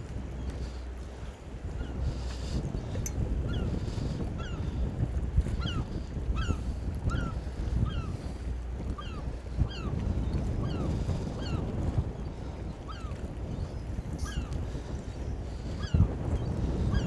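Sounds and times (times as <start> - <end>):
wind rumble on microphone: 0.0 - 17.0
seagull calling: 9.0 - 10.0, 12.8 - 13.2, 14.2 - 14.6, 15.7 - 16.1.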